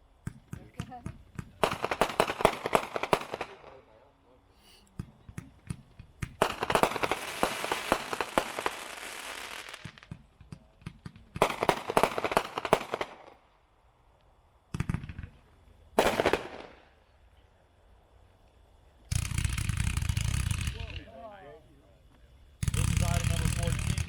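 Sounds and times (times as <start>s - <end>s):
firework cake crackling pops: 0.2s - 4.1s, 4.8s - 13.6s, 14.2s - 17.1s.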